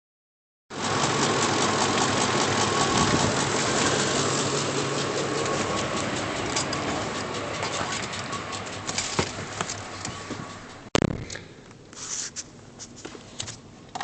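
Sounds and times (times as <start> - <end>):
engine idling rough with misfire: 0.7 - 11.1.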